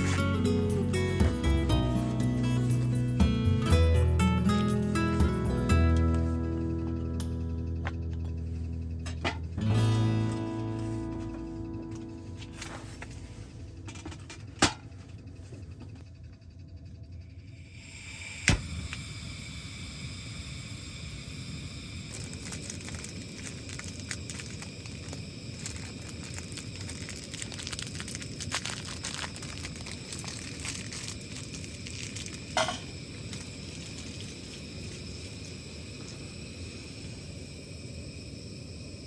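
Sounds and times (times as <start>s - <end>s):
food sizzling over wood fire: 0.0s - 7.1s, 17.8s - 39.0s.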